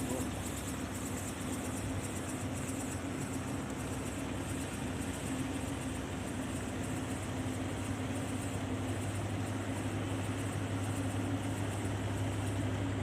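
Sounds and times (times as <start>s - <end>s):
steady engine-like drone: 0.0s - 13.0s.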